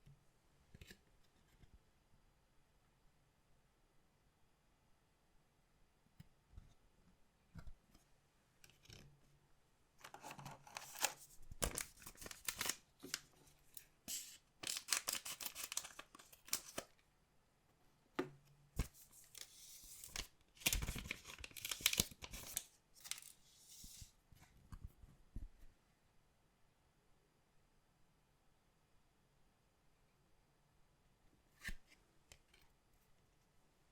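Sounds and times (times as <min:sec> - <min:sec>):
packaging crinkling and tearing: 0:10.1 - 0:13.3, 0:14.1 - 0:16.9, 0:19.0 - 0:23.4.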